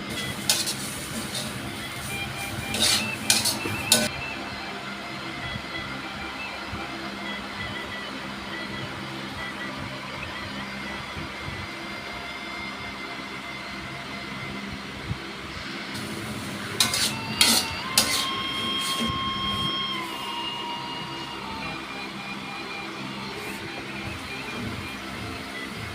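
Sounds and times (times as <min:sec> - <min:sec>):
cooking hiss on stove: 0:00.0 - 0:04.1, 0:15.8 - 0:20.5
utensil clinking against pan: 0:02.7 - 0:04.1, 0:16.8 - 0:19.1.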